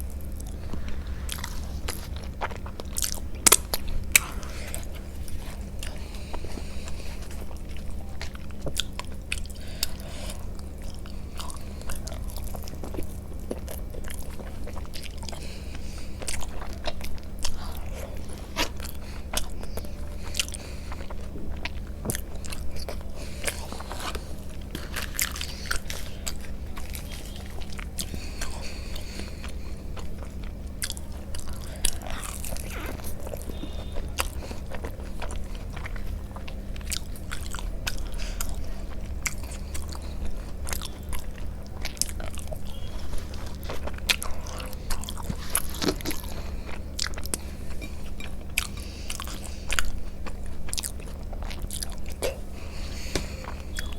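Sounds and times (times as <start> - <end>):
person chewing food: 0.0 - 53.9
steady low hum: 0.0 - 53.9.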